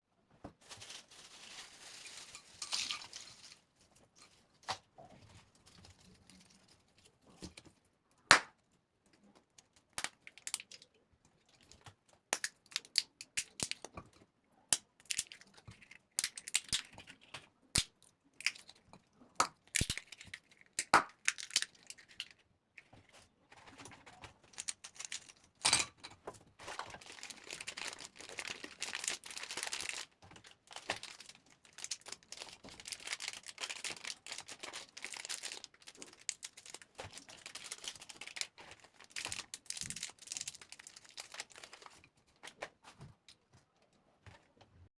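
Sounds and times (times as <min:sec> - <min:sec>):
plastic wrappers crinkling: 0:00.5 - 0:04.6, 0:10.0 - 0:10.9, 0:19.6 - 0:22.4, 0:23.6 - 0:25.9, 0:26.5 - 0:42.6
hard candy crunching: 0:10.0 - 0:10.9, 0:11.6 - 0:13.9, 0:14.7 - 0:22.9, 0:24.4 - 0:26.0, 0:26.6 - 0:42.1.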